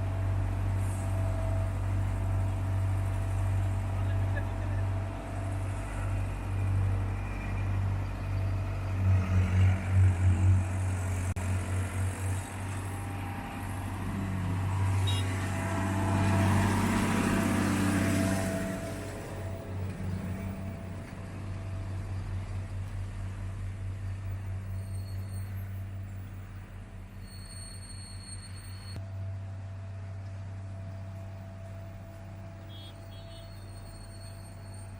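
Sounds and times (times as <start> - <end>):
heavy diesel engine humming: 0.0 - 27.2.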